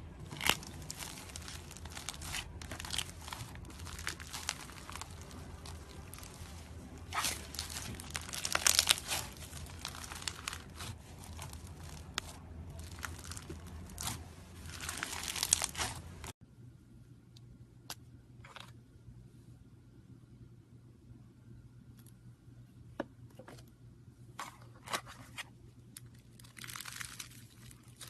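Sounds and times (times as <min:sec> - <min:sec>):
slime crackling and popping: 0:00.2 - 0:16.3, 0:26.3 - 0:28.0.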